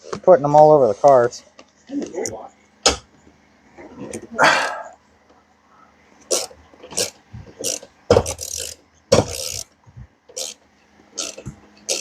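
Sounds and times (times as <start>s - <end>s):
ratchet wrench clicking: 6.3s - 9.7s, 10.3s - 10.6s, 11.2s - 12.0s.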